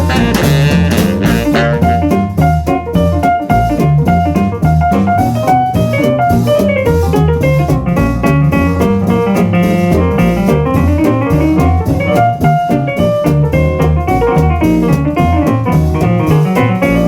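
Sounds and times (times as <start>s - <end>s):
piano: 0.0s - 17.0s
steady drum beat: 0.0s - 17.0s
stepping bass line: 0.0s - 17.0s
swing jazz music: 0.0s - 17.0s.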